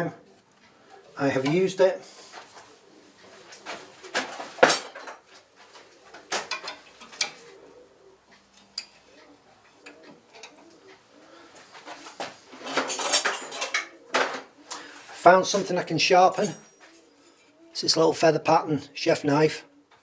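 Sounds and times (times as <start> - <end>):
metal objects clattering: 3.4 - 5.4, 6.1 - 7.6, 8.4 - 10.9, 11.8 - 17.5
metal tools clinking: 6.4 - 7.5, 8.3 - 10.7, 12.6 - 17.5.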